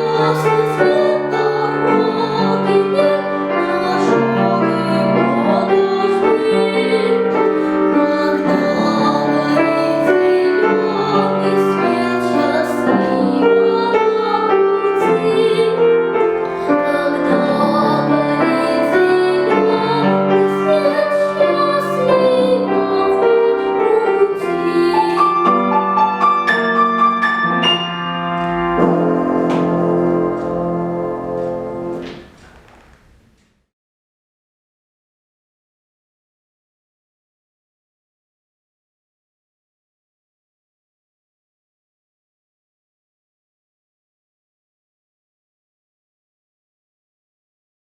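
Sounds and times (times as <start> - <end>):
girl singing classical style: 0.0 - 32.4
piano accompaniment: 0.0 - 33.4.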